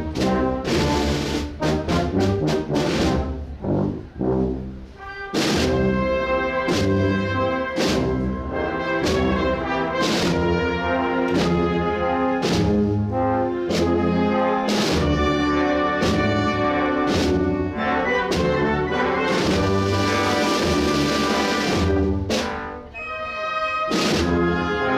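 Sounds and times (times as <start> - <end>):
brass band playing a slow march: 0.0 - 24.9
steady drum strokes: 11.2 - 24.9.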